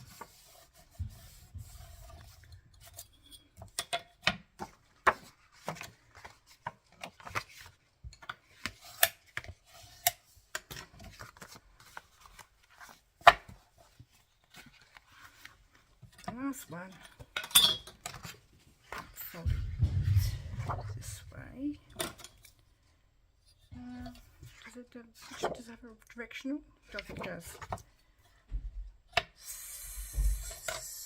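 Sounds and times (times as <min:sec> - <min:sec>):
paper rubbing and scraping: 0:00.0 - 0:02.4.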